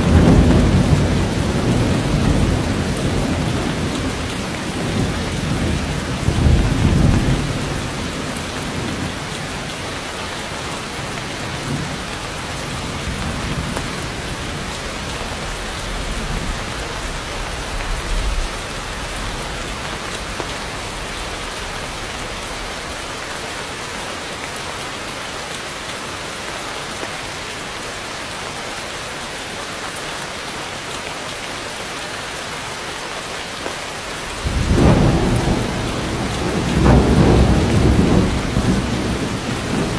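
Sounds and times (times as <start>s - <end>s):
thunder rumbling: 0.0s - 9.7s, 34.2s - 39.9s
heavy rain on foliage: 0.0s - 39.9s.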